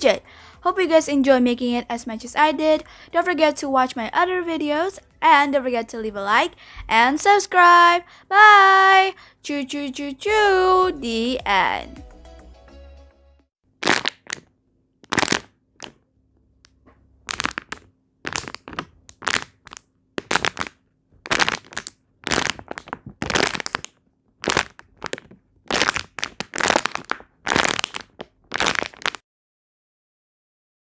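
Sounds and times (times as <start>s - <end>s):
plastic bottle crackling: 13.8s - 16.0s, 17.2s - 29.2s.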